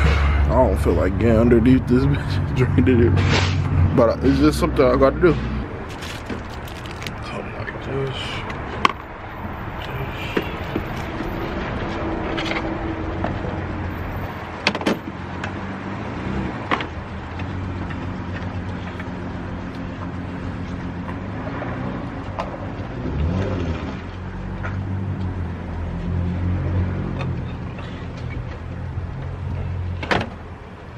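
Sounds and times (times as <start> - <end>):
vehicle engine running: 5.4 - 12.3.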